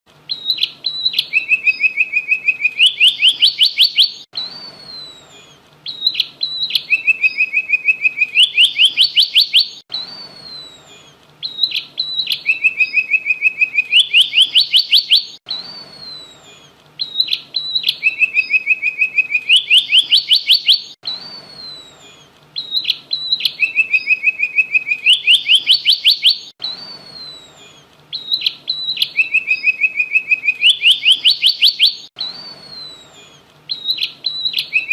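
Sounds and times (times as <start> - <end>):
songbird singing trills: 0.3 - 34.9.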